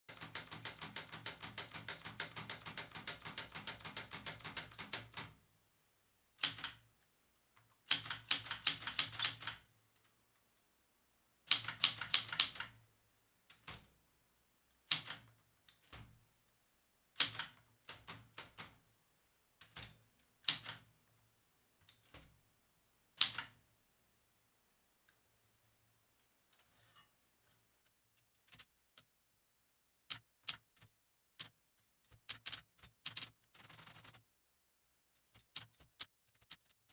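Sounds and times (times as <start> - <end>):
typewriter keystrokes: 0.2 - 5.3, 6.4 - 6.8, 7.9 - 9.6, 11.5 - 12.8.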